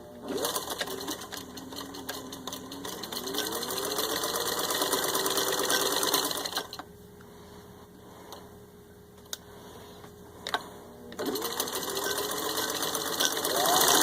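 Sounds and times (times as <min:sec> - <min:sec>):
sewing machine stitching: 0:00.2 - 0:06.8, 0:11.2 - 0:14.0.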